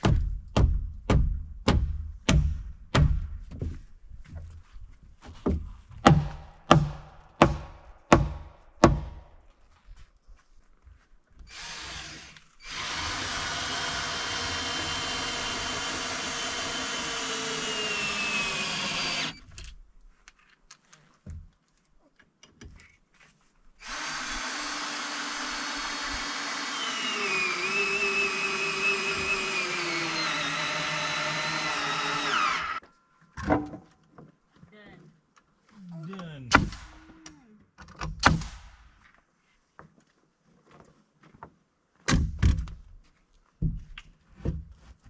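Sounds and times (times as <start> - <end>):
power drill whining: 11.5 - 19.5, 23.8 - 32.8.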